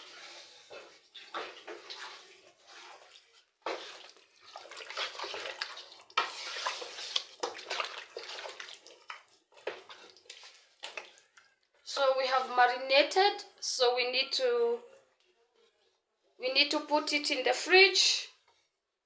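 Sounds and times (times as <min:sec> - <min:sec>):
hands squelching meat in marinade: 0:00.0 - 0:11.5.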